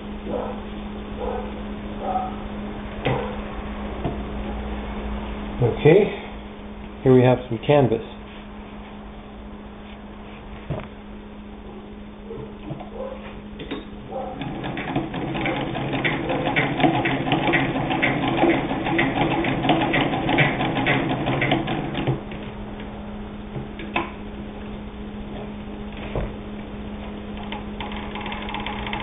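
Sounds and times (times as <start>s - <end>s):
hand-cranked sewing machine clatter: 14.4s - 22.2s, 27.4s - 29.0s.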